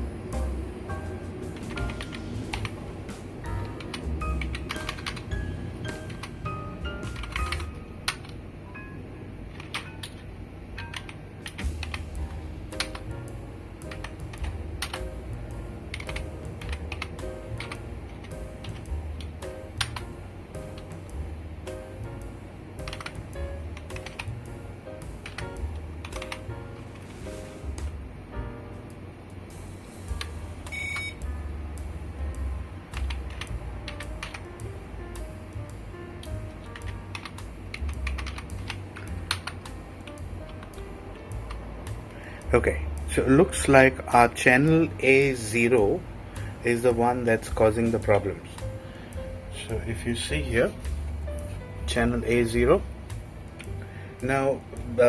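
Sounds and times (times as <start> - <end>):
background music: 0.0 - 55.0
computer keyboard typing: 1.5 - 2.8, 3.5 - 8.4, 10.8 - 12.0, 13.8 - 15.1, 15.9 - 20.1, 22.8 - 24.4, 25.2 - 26.5, 33.0 - 34.5, 36.6 - 41.6
typing on computer keyboard: 3.7 - 5.4, 22.8 - 23.2, 36.7 - 40.8
short high beep: 30.7 - 31.2.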